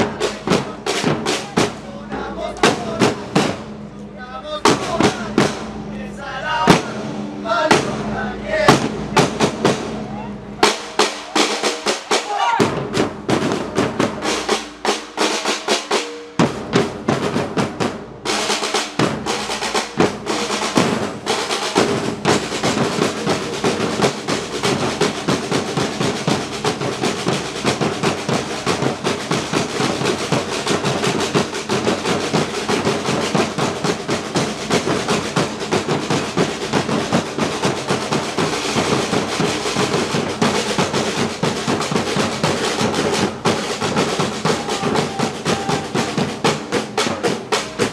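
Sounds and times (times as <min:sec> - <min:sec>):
snare drums rolling: 0:00.0 - 0:03.9, 0:04.6 - 0:05.8, 0:06.6 - 0:47.9
percussion ensemble drumming: 0:00.0 - 0:47.9.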